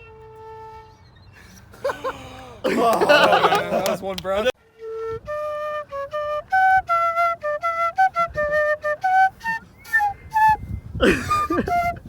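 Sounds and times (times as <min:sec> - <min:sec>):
small flute tune: 0:00.0 - 0:01.5, 0:04.6 - 0:12.0.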